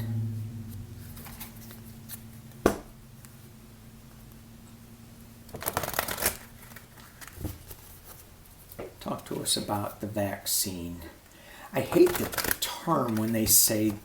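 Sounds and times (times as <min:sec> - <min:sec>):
faint low hum: 0:00.0 - 0:14.0
cards being shuffled: 0:01.0 - 0:02.9, 0:05.5 - 0:08.8, 0:11.8 - 0:14.0
sharp tap on cards: 0:02.6 - 0:02.9.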